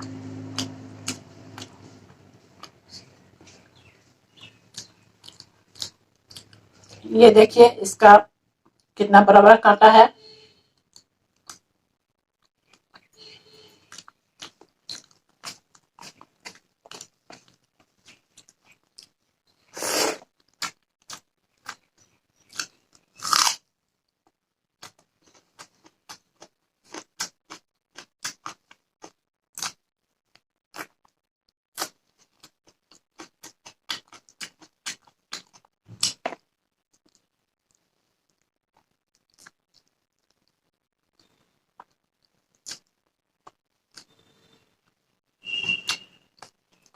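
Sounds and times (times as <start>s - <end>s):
wet chewing and smacking: 0.5s - 7.0s, 13.8s - 19.4s, 20.2s - 31.2s, 31.8s - 44.2s
crunchy bites: 20.2s - 23.6s.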